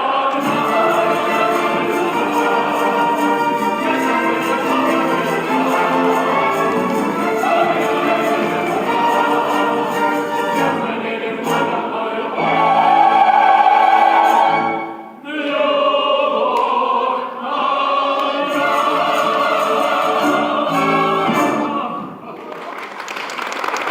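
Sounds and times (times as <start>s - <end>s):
choir singing long held notes: 0.0s - 22.3s
orchestral accompaniment: 0.3s - 15.2s, 18.4s - 22.1s.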